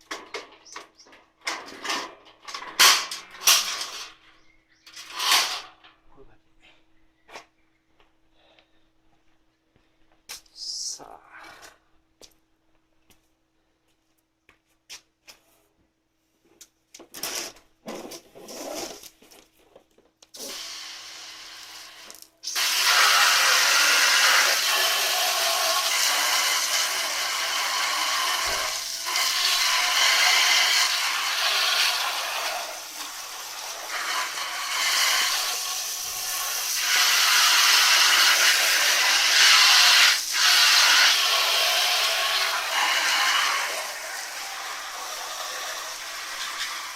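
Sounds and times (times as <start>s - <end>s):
hose spraying water hiss: 20.4s - 46.9s.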